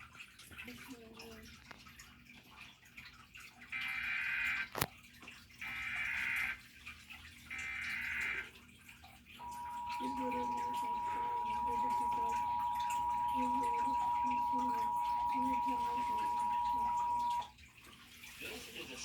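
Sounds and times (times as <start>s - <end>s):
steady alert tone: 9.4s - 17.5s.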